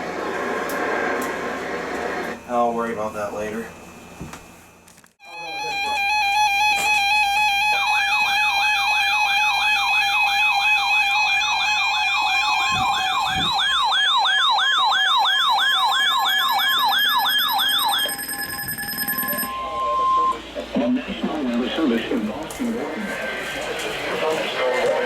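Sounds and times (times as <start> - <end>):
siren-like whoop: 5.2 - 20.4
fluttering alarm tone: 5.3 - 20.4.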